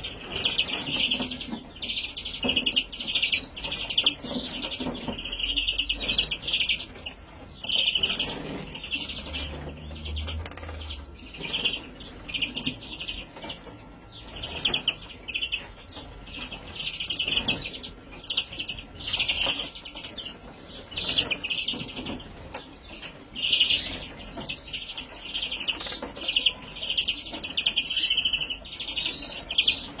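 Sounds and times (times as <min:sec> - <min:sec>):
young bird chirping: 0:00.0 - 0:30.0.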